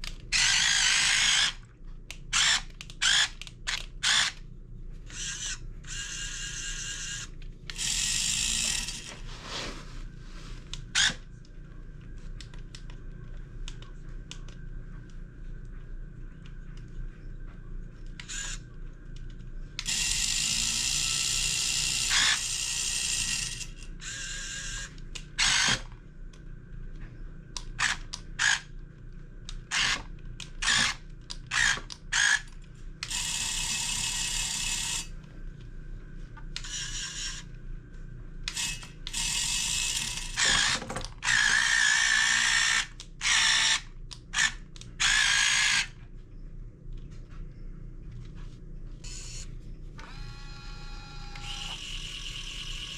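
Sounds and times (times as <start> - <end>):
small electric motors whining: 0.3 - 1.6, 2.3 - 4.4, 5.1 - 9.2, 18.2 - 18.6, 19.8 - 25.8, 30.6 - 35.1, 36.6 - 37.5, 38.5 - 43.8, 44.4 - 45.9, 49.0 - 52.9.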